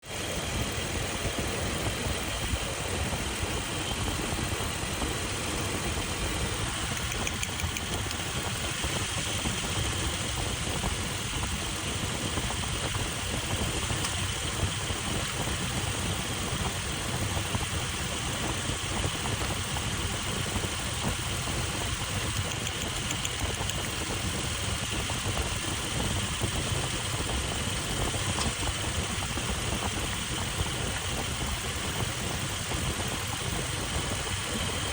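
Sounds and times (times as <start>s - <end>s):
engine idling: 0.0s - 34.9s.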